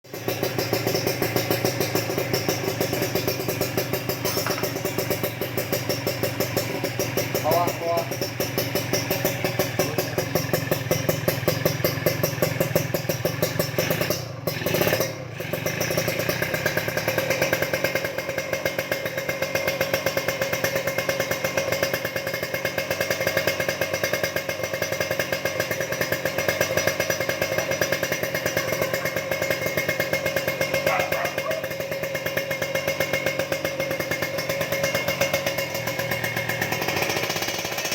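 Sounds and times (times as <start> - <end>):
two-stroke motorcycle engine running: 0.0 - 37.9.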